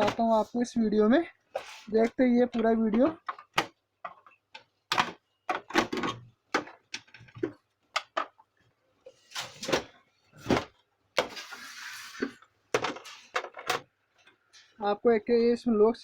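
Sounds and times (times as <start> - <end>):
plastic casing clicks and knocks: 2.6 - 8.4
plastic scraping: 9.1 - 13.8.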